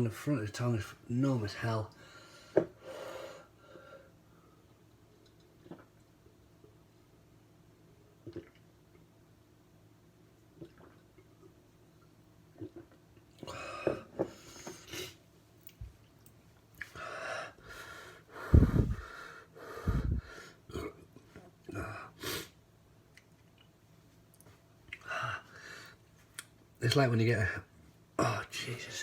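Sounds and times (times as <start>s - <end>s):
man breathing heavily and wheezing: 16.9s - 20.7s
loud puffs of breath: 17.0s - 20.6s, 22.2s - 22.6s.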